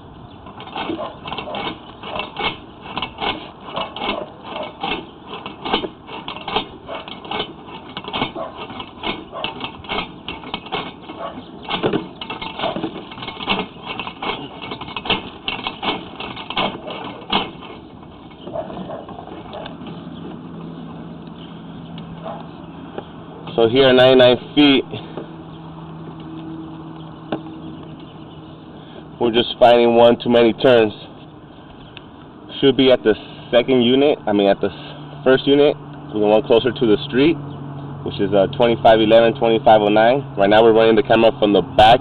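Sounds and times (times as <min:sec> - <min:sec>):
cable rattling and clicking: 0:00.4 - 0:25.3.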